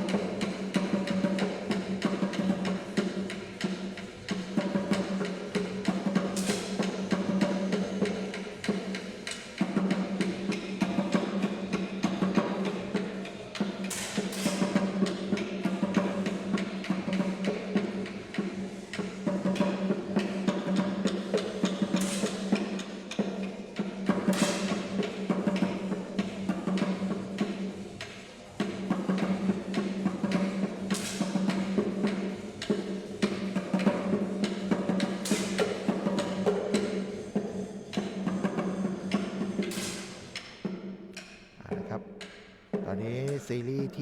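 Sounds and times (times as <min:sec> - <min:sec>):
fast drum and percussion beat: 0:00.0 - 0:44.0.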